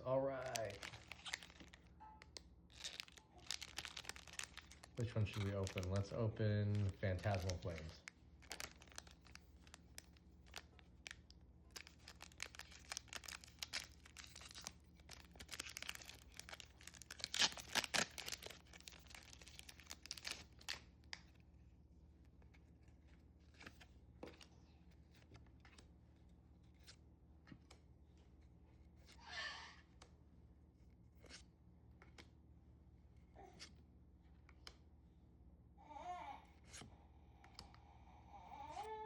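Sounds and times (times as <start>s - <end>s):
foil wrapper tearing and crinkling: 0.4s - 1.9s, 2.7s - 20.8s.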